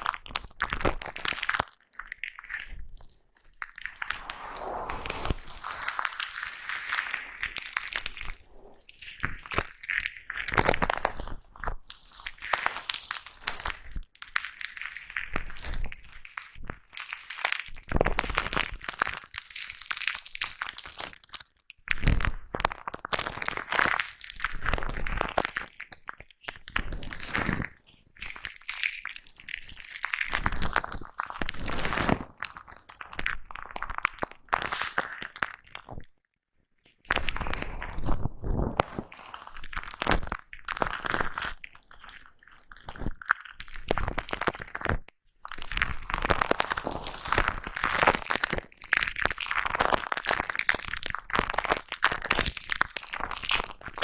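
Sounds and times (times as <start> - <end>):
foam brush scratching microphone: 4.0 - 8.9.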